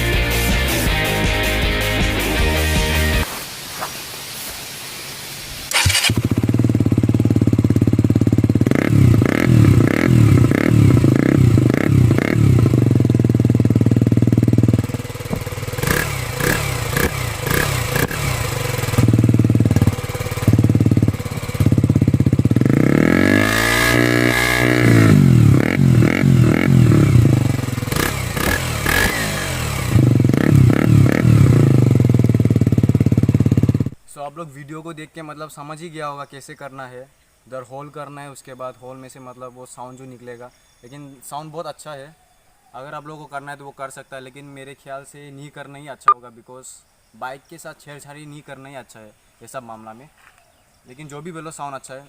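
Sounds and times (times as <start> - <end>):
motorcycle engine revving: 5.7 - 34.0.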